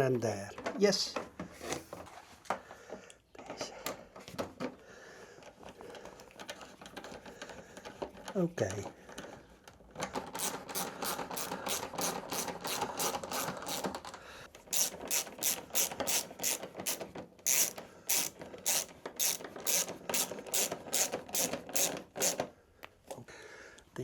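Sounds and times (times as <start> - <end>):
hand ratchet clicking: 10.1 - 22.5.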